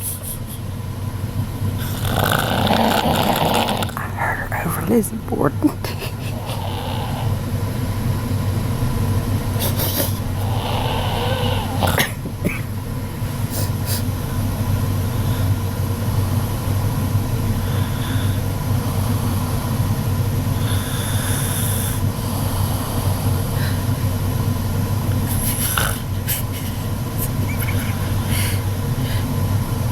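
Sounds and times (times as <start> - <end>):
woman snoring: 1.8 - 4.7, 5.9 - 7.5, 9.6 - 12.2, 20.6 - 24.0, 25.3 - 29.2.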